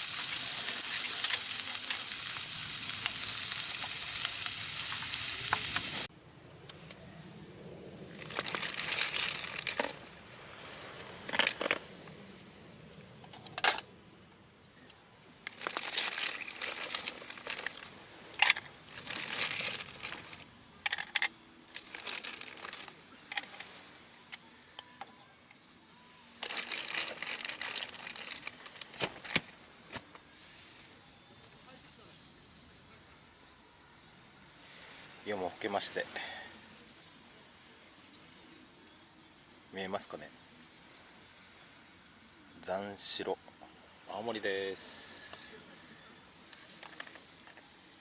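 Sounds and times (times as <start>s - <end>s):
crinkling and rustling: 8.1s - 11.9s, 15.4s - 23.9s, 26.3s - 30.3s, 46.5s - 47.9s.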